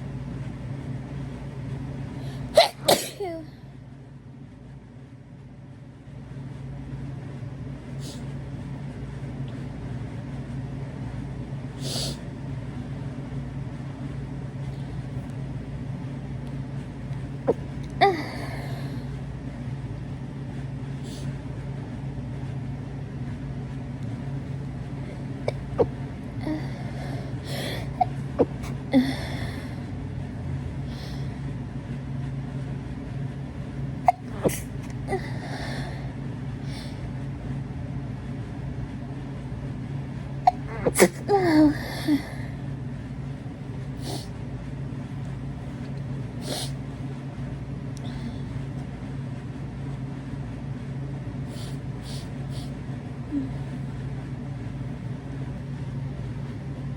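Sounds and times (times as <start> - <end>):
steady low hum: 0.0 - 56.9
person sneezing: 2.3 - 3.5, 25.5 - 29.7, 34.1 - 35.7, 40.5 - 42.4
person sniffing: 11.8 - 12.2, 25.5 - 29.7, 34.1 - 35.7, 40.5 - 41.3, 51.5 - 52.7
breathy sniffs and exhales: 34.1 - 36.0, 51.5 - 52.8.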